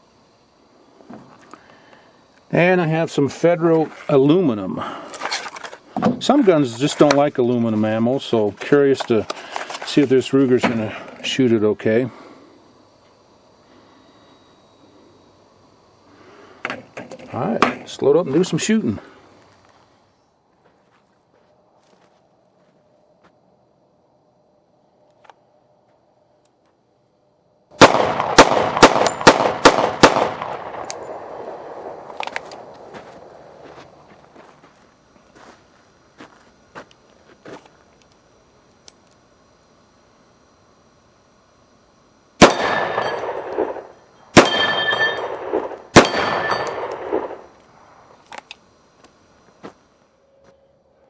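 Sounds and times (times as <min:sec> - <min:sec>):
gunshot echo: 0:27.8 - 0:32.1, 0:42.4 - 0:43.8, 0:44.4 - 0:47.4
pistol shots: 0:27.8 - 0:32.8, 0:42.4 - 0:47.4.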